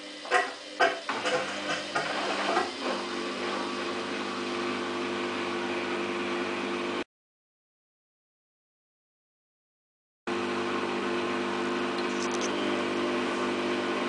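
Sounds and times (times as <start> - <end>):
washing machine motor hum: 0.0 - 7.0, 10.3 - 14.0.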